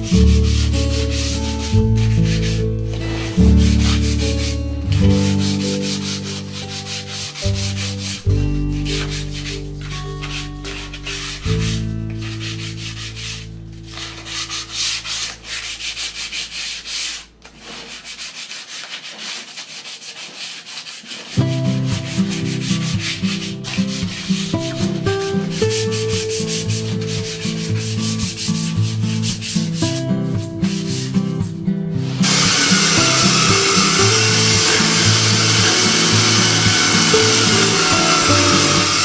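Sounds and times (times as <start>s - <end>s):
background music chords: 0.0s - 16.0s, 21.4s - 39.0s
wood sanding hiss: 32.0s - 39.0s.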